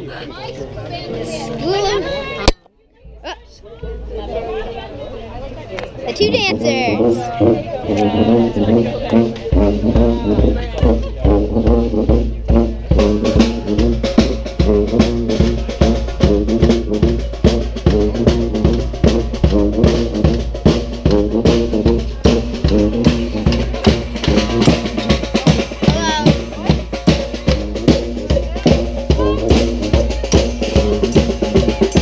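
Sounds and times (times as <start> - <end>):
brass band playing: 6.1 - 32.0
bass drum and snare beat: 6.5 - 32.0.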